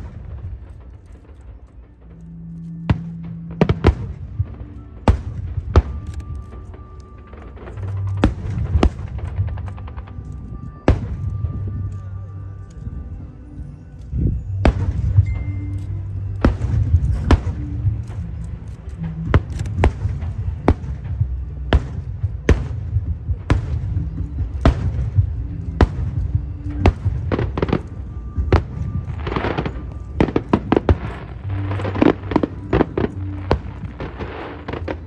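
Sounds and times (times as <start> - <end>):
fireworks bangs: 0.0 - 11.8, 19.1 - 35.0
fireworks crackling: 0.0 - 13.0, 14.0 - 35.0
music with low tone: 0.0 - 35.0.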